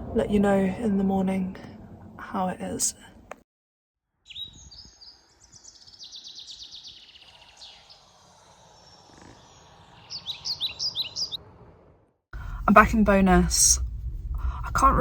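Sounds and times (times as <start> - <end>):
songbirds singing: 4.2 - 11.5.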